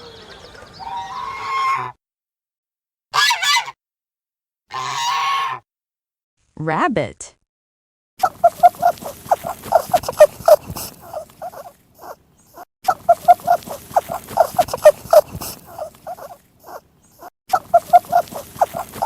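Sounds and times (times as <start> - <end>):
rabbit squeaky calls: 0.0 - 1.9, 8.3 - 19.0.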